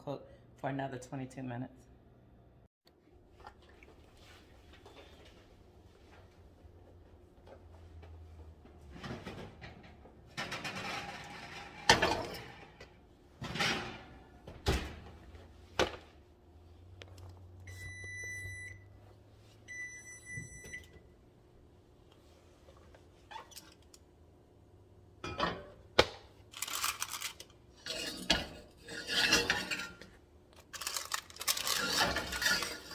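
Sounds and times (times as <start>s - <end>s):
heavy pot sliding onto oven rack: 8.9s - 14.3s, 27.8s - 30.1s, 31.5s - 32.9s
oven door opening and shutting: 8.9s - 15.2s
long electronic oven beeps: 17.7s - 19.0s, 19.6s - 21.1s.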